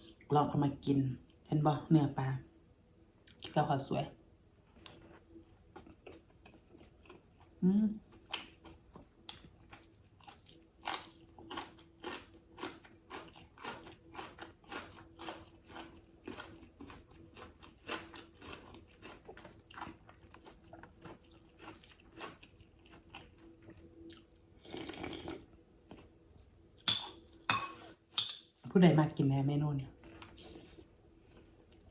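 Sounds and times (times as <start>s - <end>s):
person chewing and smacking: 4.7s - 7.5s, 8.1s - 26.1s.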